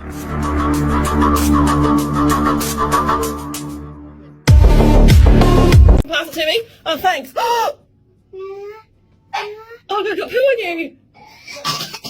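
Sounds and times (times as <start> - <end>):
electronic music with heavy bass: 0.0 - 6.0
music track: 0.0 - 6.0.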